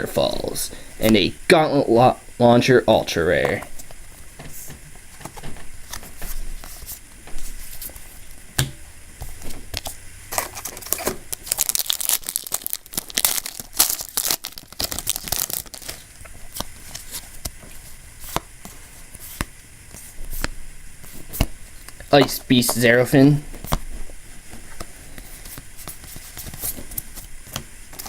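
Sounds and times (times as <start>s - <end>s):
foil wrapper tearing and crinkling: 9.7s - 18.5s.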